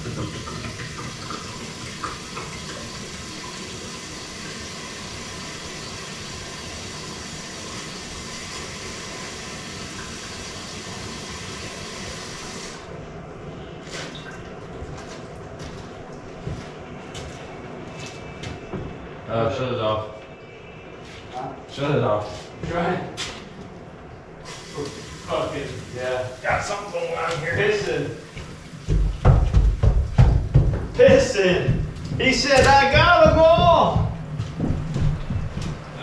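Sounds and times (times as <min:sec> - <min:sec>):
water and air rushing from tap: 0:00.0 - 0:12.9, 0:24.4 - 0:29.9.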